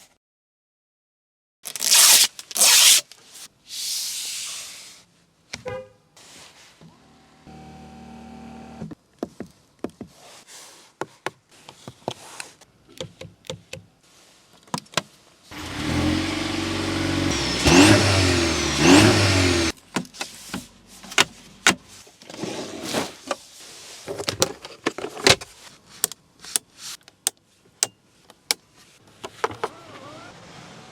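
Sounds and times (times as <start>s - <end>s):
car engine revving: 15.5s - 19.8s.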